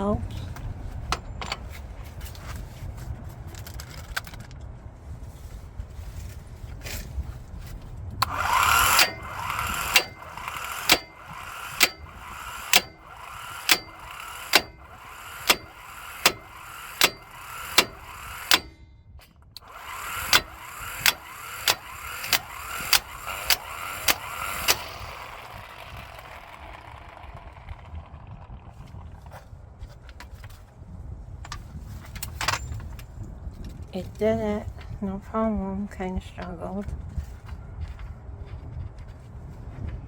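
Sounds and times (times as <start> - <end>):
impact wrench hammering nut: 8.2 - 18.9, 19.6 - 27.0.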